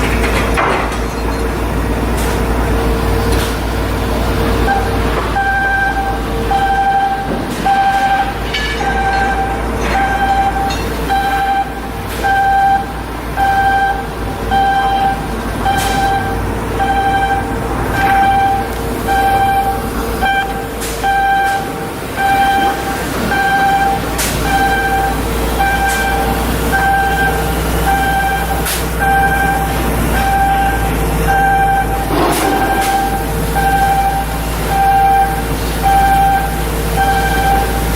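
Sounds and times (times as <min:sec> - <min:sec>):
steady machine noise: 0:00.0 - 0:37.9
electronic warning beeps: 0:04.6 - 0:37.9
sharp metallic knocks: 0:07.2 - 0:11.2.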